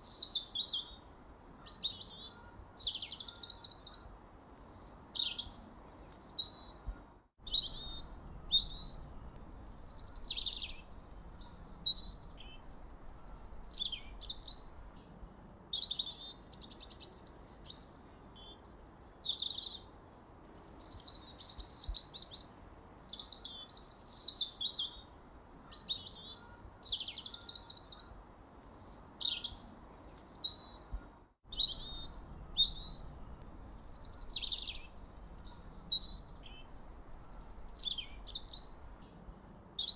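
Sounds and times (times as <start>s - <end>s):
birdsong chirps and trills: 0.0s - 19.9s, 20.5s - 39.9s.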